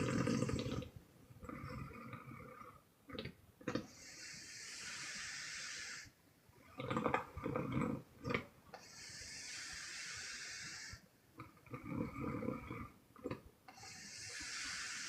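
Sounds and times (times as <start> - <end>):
woman snoring: 0.0 - 0.9, 13.7 - 15.0.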